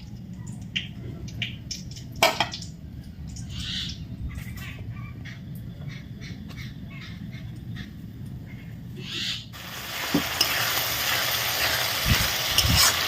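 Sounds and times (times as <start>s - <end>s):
birds chirping and calling: 3.3s - 9.6s.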